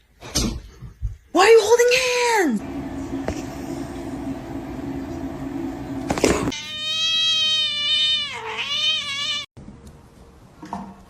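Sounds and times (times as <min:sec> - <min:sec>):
cat meowing: 0:06.5 - 0:09.5.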